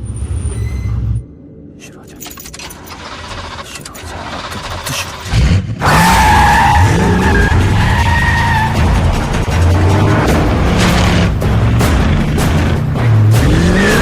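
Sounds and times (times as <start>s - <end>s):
car engine revving: 2.8s - 14.0s
tire squeal: 5.8s - 9.2s.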